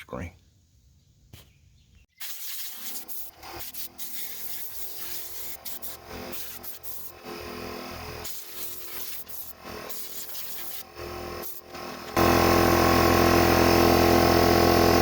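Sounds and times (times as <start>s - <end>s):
hissing spray blasts: 2.2s - 15.0s.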